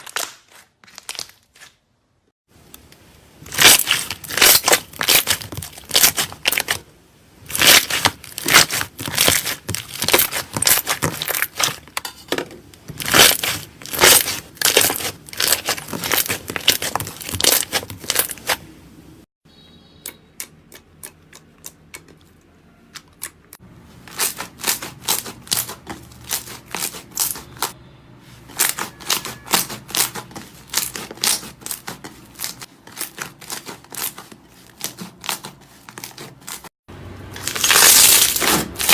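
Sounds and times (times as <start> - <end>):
slime squished by hand: 3.5 - 6.8.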